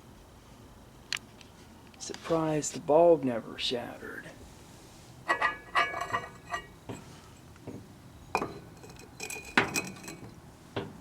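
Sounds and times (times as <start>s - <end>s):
glass clinking: 5.3s - 6.7s, 8.3s - 10.3s.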